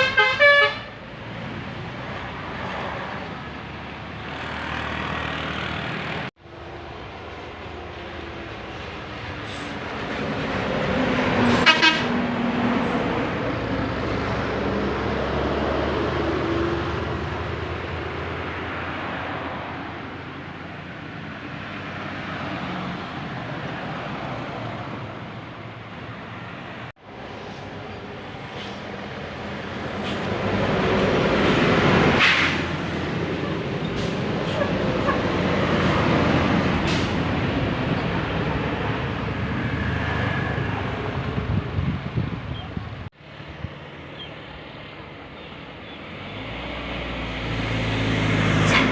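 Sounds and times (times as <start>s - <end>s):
horn toot: 0.0s - 1.0s, 11.5s - 12.2s
buses driving past: 0.0s - 48.9s.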